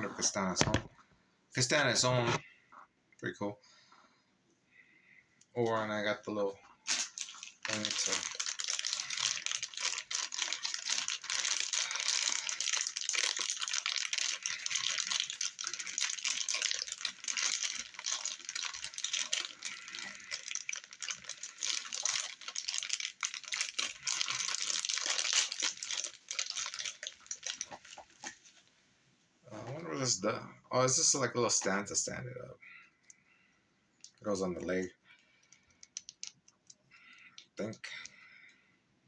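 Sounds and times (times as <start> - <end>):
plastic packaging crinkling: 5.6 - 28.7, 34.0 - 37.6.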